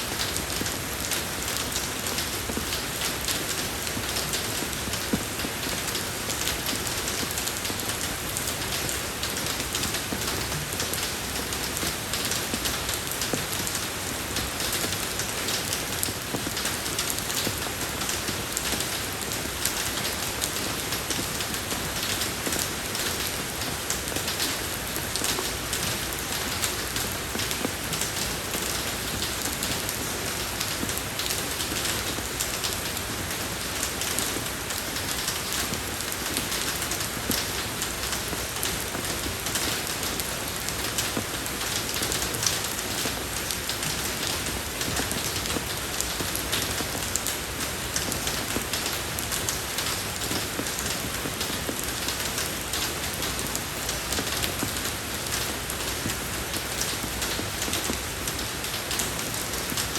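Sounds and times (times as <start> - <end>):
rain falling on a road: 0.0 - 59.9.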